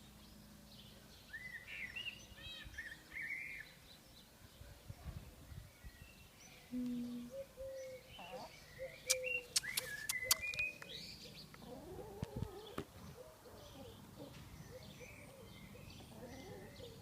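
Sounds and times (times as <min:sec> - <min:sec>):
sharp clicks: 0:09.1 - 0:11.0
chickens clucking: 0:11.4 - 0:14.5.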